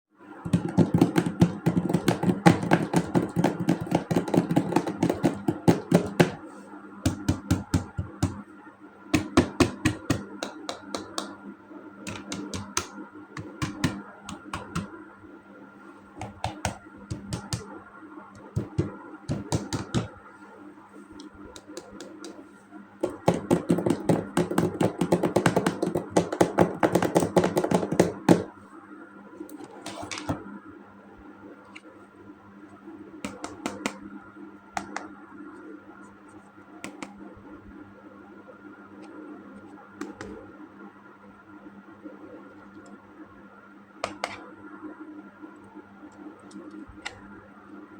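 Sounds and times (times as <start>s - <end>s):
faint steady hum: 0.1s - 47.9s
plastic toys clicking and tapping: 0.5s - 6.4s.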